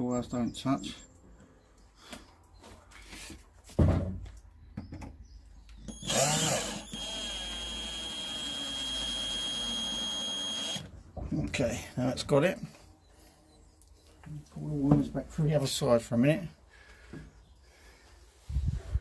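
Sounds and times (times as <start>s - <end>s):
electric drill motor whine: 5.9s - 10.9s.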